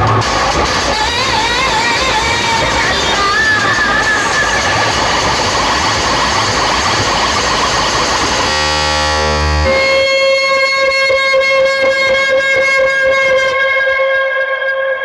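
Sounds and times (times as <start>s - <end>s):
deep bass note: 0.0s - 10.2s
noisy rush: 0.0s - 13.6s
horn-like synth tone: 0.0s - 15.0s
loud electronic music: 0.0s - 15.0s.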